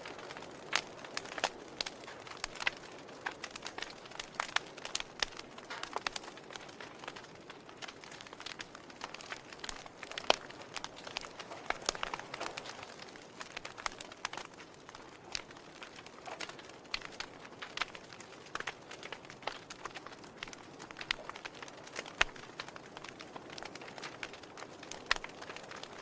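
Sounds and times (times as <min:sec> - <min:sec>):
wood fire crackling: 0:00.0 - 0:26.0.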